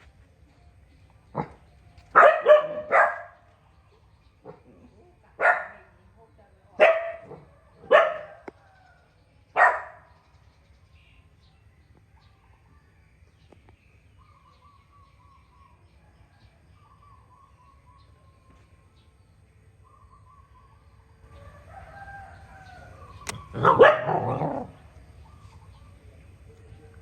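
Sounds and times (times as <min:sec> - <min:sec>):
sharp click: 0:23.2 - 0:23.5.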